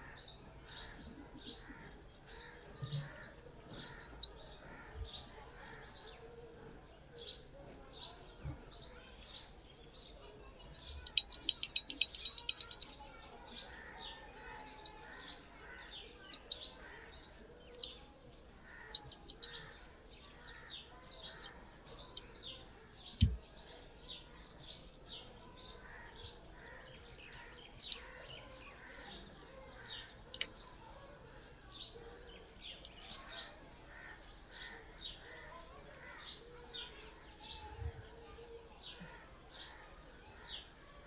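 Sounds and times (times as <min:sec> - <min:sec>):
small birds chirping: 0:00.0 - 0:41.0
sharp clicks: 0:18.9 - 0:19.6, 0:23.1 - 0:23.4.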